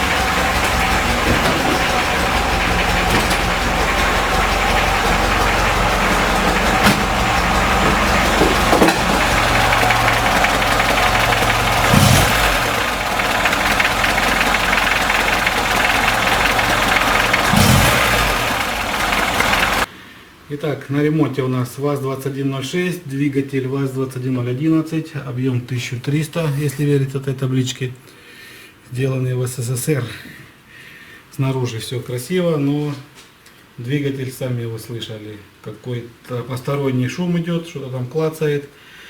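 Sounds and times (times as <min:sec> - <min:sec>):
engine clattering noise: 0:00.0 - 0:19.9
misfiring car engine running: 0:00.0 - 0:19.9.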